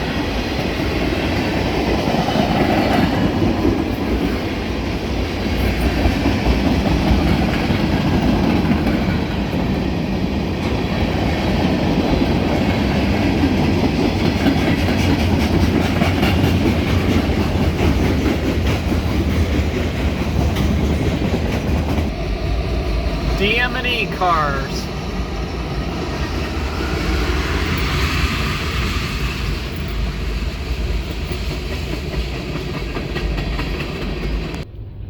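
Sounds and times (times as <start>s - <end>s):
train wheels rumbling on rail: 0.0s - 35.0s
wheels clacking over rail joints: 5.4s - 22.2s.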